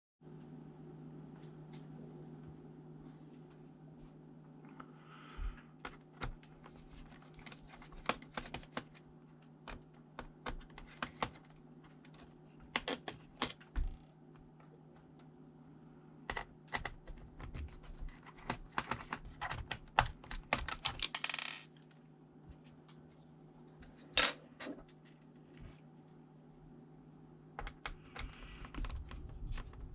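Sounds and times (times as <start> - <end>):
steady low hum: 0.2 - 20.5, 21.7 - 29.9
clicks and taps handling laptop: 5.9 - 13.9.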